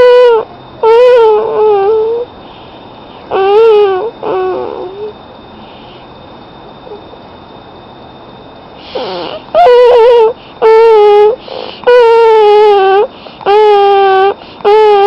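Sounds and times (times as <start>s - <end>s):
hissy breaths: 2.0s - 6.3s, 8.7s - 15.0s
child voicing high held tones: 3.3s - 5.1s, 9.6s - 15.0s.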